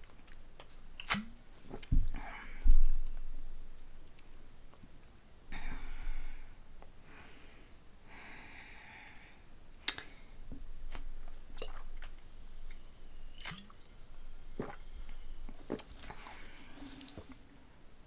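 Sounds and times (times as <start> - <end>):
sipping soda: 10.9 - 17.5.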